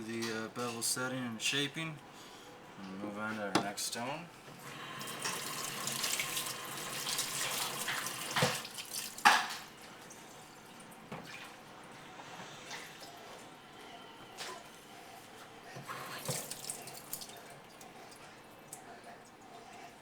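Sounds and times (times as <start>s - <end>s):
water running and splashing: 5.1s - 11.6s, 16.0s - 17.9s
water dripping: 5.2s - 11.5s, 16.2s - 19.4s.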